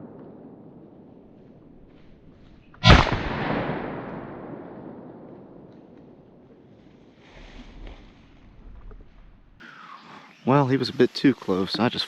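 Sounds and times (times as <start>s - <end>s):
shotgun shot with echo: 2.8s - 5.7s.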